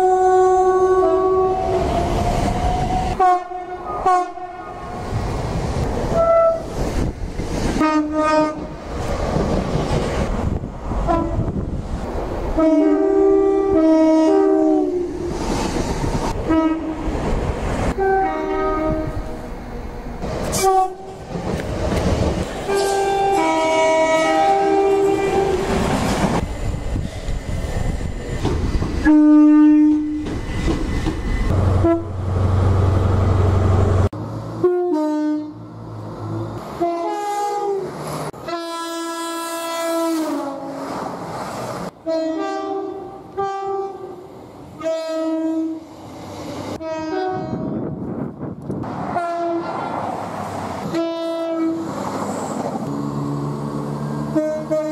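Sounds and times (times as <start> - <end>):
train two-tone horn blasts: 0.0 - 2.1, 2.9 - 5.0, 6.1 - 6.7, 7.8 - 8.8, 11.0 - 11.6, 12.6 - 15.3, 16.4 - 17.1, 17.9 - 19.5, 20.5 - 21.2, 22.6 - 25.9, 29.0 - 30.3, 31.5 - 32.2, 34.6 - 35.6, 36.8 - 40.9, 42.0 - 45.9, 46.8 - 47.8, 49.1 - 49.8, 50.8 - 52.0, 54.1 - 54.9
passing train rumble: 0.0 - 54.9.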